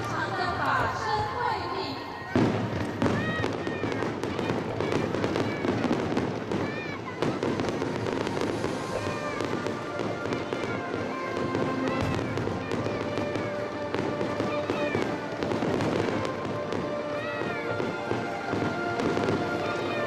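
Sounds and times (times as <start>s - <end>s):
fireworks crackling and popping: 0.0s - 20.0s
music playing: 0.0s - 20.0s.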